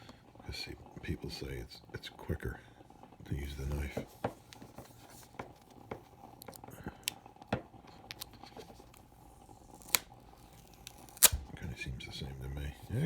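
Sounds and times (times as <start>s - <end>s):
knife cutting plastic packaging: 8.1s - 11.5s.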